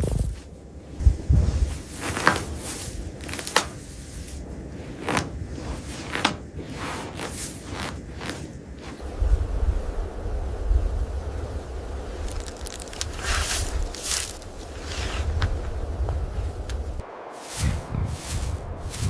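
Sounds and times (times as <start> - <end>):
steady background noise: 0.0 - 19.0
low thumps: 9.1 - 19.0.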